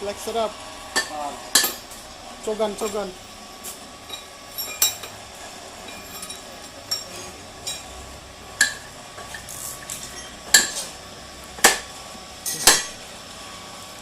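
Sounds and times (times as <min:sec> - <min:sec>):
metal tools clinking: 0:04.1 - 0:05.2, 0:12.4 - 0:13.0.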